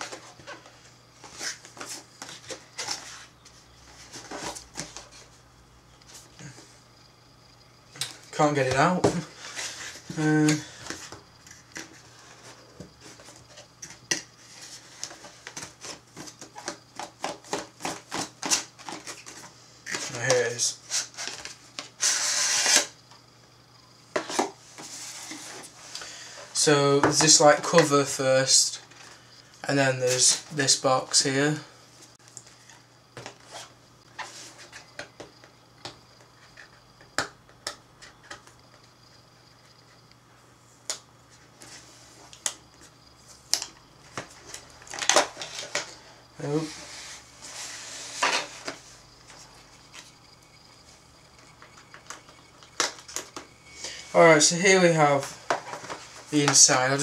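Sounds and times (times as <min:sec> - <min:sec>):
cardboard packaging handled: 0:09.0 - 0:22.8.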